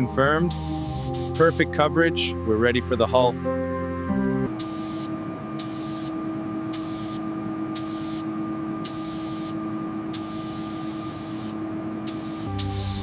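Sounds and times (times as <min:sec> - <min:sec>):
steady low hum: 0:00.0 - 0:13.0
paint spray gun hissing: 0:00.4 - 0:01.7, 0:04.6 - 0:07.2, 0:07.8 - 0:13.0.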